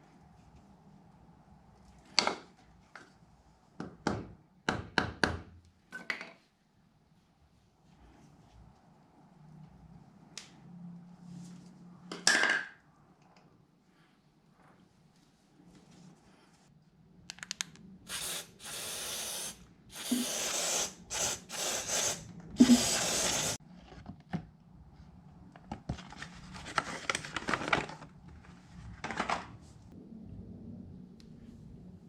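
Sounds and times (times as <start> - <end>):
spray hissing bursts: 18.1 - 23.6.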